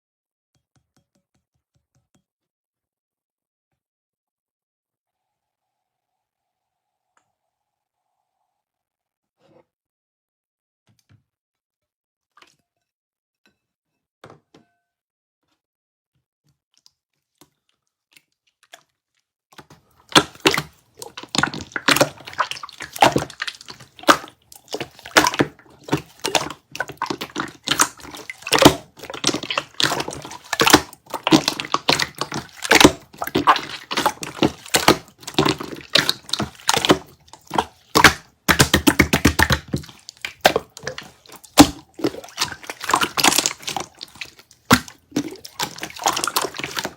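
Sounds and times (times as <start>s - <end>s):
slime crackling and popping: 20.1s - 46.9s.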